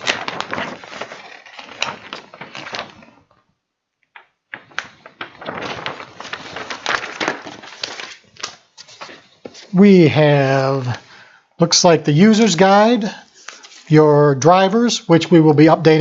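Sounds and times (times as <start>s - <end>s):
paper and cardboard rustling: 0.0s - 3.4s, 4.5s - 9.8s, 12.3s - 13.9s.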